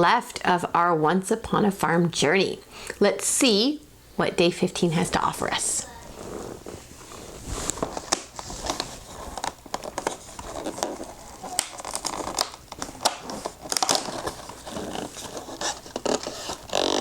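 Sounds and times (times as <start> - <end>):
cardboard crinkling: 6.1 - 17.0.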